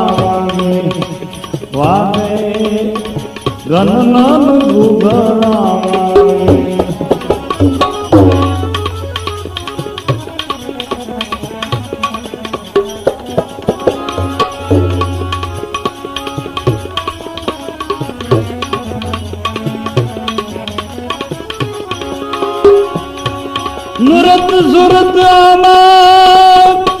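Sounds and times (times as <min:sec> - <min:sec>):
tabla strokes: 0:00.0 - 0:27.0
sustained melody notes: 0:07.3 - 0:25.9.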